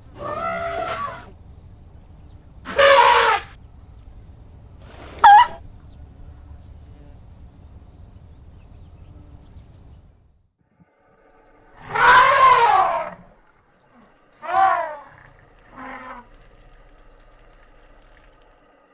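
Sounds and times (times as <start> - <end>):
elephant trumpeting: 0.1 - 1.3, 2.7 - 3.6, 4.8 - 5.6, 11.8 - 13.3, 14.4 - 16.5.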